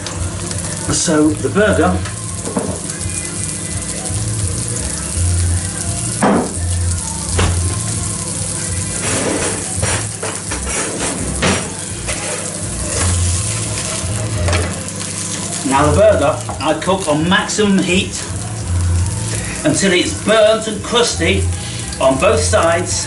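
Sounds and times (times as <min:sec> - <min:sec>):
burger patty sizzling in a pan: 0:00.0 - 0:23.0
utensil knocking and scraping pan: 0:09.0 - 0:13.2.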